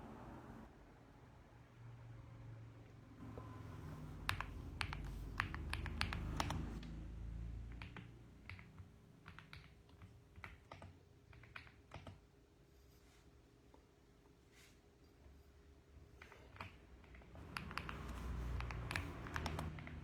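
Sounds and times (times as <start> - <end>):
mechanical keyboard typing: 4.2 - 6.9, 7.6 - 12.2, 16.2 - 20.0.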